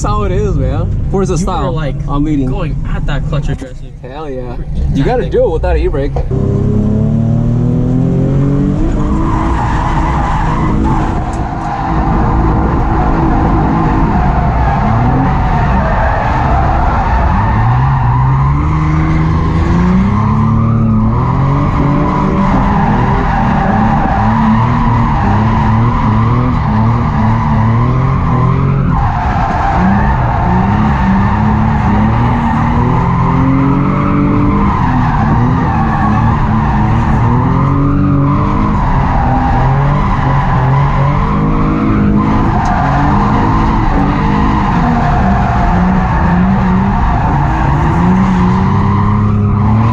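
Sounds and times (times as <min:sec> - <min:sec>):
car engine revving: 0:00.0 - 0:49.9.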